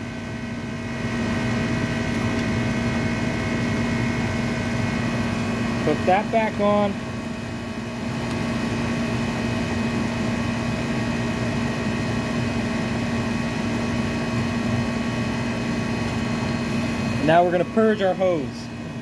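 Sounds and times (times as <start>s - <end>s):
air conditioner low hum: 0.0s - 19.0s
condenser fan rushing: 0.0s - 19.0s.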